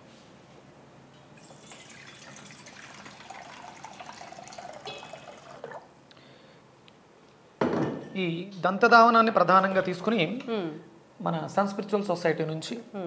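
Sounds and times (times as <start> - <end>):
water pouring into vessel: 1.4 - 6.0.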